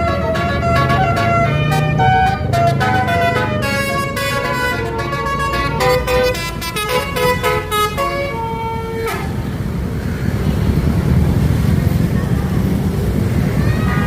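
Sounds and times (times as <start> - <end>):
bus multi-tone air horn tune: 0.0 - 9.6.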